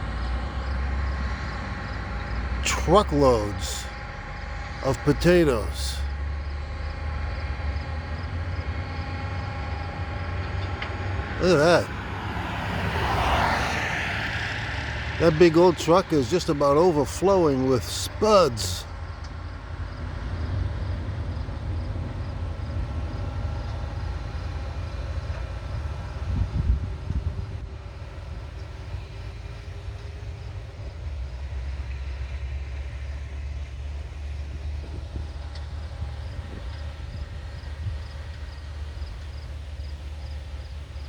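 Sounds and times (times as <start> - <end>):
distant engine rumble: 9.4 - 18.8.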